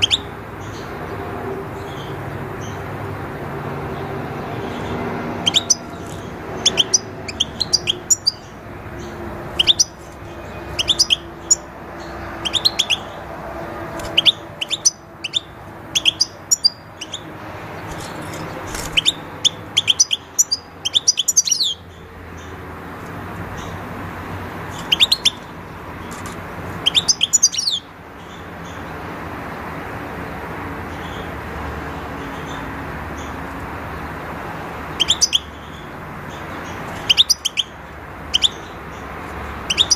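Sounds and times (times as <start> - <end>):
goldfinch twittering: 0.0 - 0.8, 4.7 - 13.2, 14.0 - 22.5, 24.7 - 28.8, 34.9 - 39.9.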